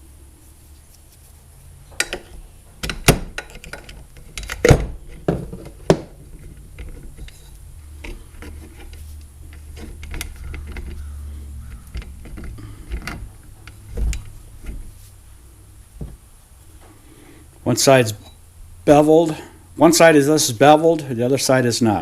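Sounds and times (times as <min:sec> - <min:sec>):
metal parts clicking and knocking: 0:01.9 - 0:14.9.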